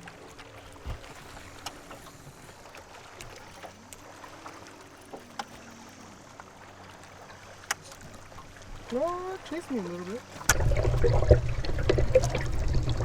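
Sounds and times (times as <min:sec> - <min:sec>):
faint water wash: 0:00.0 - 0:13.0.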